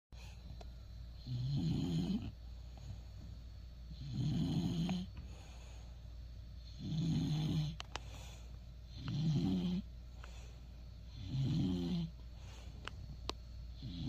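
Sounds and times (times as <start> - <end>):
quiet dog breathing: 0.2 - 14.0
dog snoring: 1.1 - 2.9, 3.9 - 5.5, 6.6 - 8.0, 8.8 - 12.8, 13.7 - 14.0.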